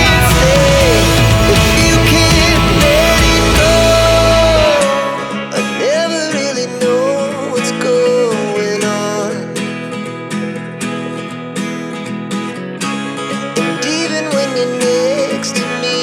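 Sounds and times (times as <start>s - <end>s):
wavering melody line: 0.0s - 5.8s
strummed acoustic guitar: 0.0s - 16.0s.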